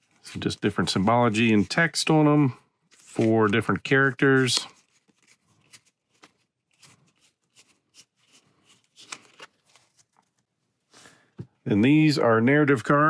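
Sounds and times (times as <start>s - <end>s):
cards snapping and rustling: 2.9s - 10.4s.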